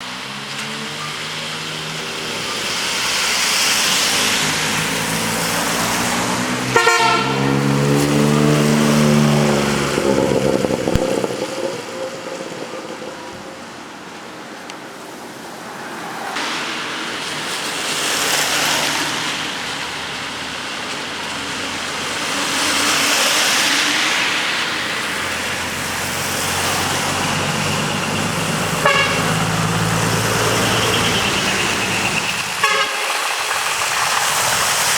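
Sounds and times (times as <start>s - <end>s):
truck engines passing: 0.0s - 34.9s
truck air horn chord: 6.7s - 7.9s, 28.7s - 29.9s, 30.5s - 33.3s.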